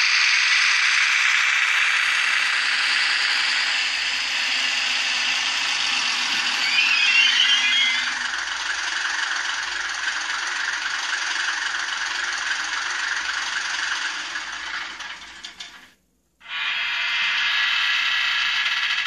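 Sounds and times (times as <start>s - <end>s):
tinny diesel engine from loudspeaker: 1.3s - 15.9s.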